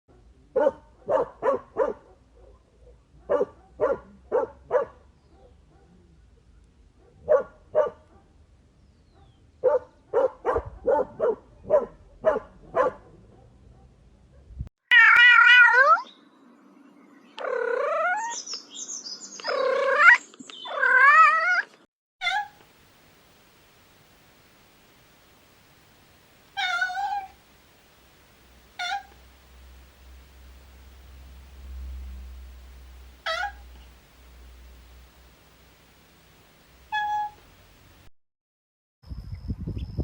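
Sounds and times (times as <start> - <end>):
dog barking: 0.1 - 6.1, 7.0 - 8.4, 9.2 - 14.5
cat meowing: 14.9 - 16.0, 22.2 - 22.6, 26.6 - 27.4, 28.8 - 29.2, 33.2 - 33.8, 36.9 - 37.4.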